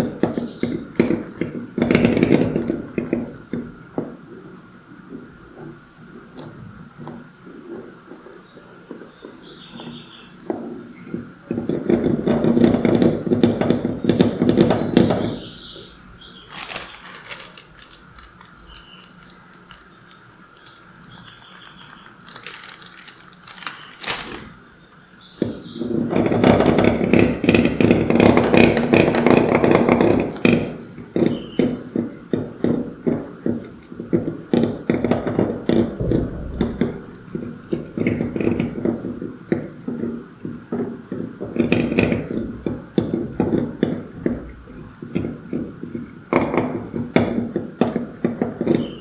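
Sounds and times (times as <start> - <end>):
handling noises: 11.6 - 24.8
faint bird chirps: 48.7 - 49.0.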